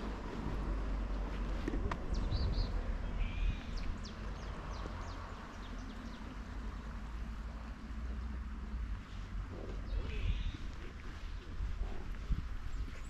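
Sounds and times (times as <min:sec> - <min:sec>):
wind rumble on microphone: 0:00.0 - 0:13.0
small birds chirping: 0:01.9 - 0:06.6, 0:09.6 - 0:13.0.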